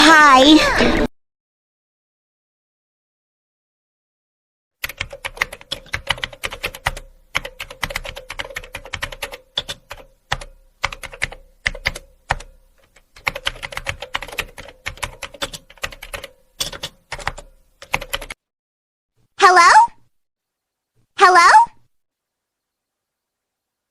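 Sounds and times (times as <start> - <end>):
keyboard typing clicks: 4.8 - 18.4.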